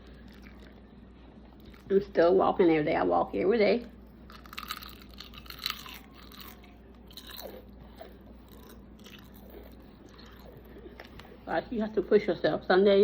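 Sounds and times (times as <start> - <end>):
person chewing crunchy food: 0.0 - 1.9, 4.1 - 11.4.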